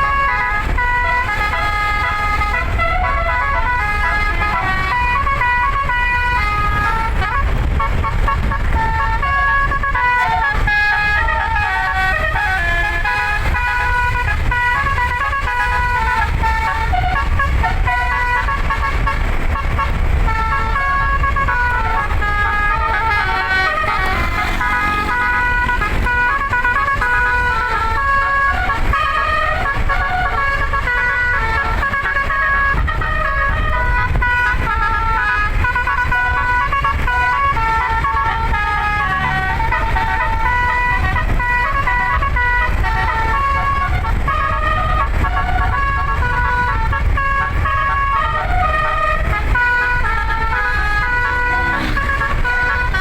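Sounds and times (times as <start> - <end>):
musical air horn tune: 0.0 - 53.0
steady low rumble: 0.0 - 53.0.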